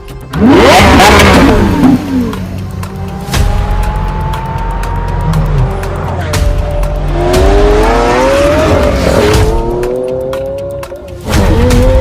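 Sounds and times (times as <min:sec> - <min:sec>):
car engine accelerating hard: 0:00.2 - 0:12.0.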